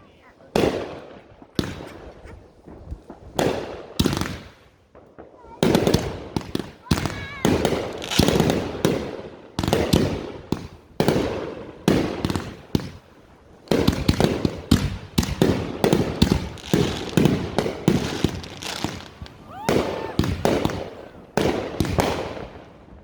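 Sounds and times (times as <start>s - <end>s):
fireworks bangs and crackle: 0.0s - 23.0s.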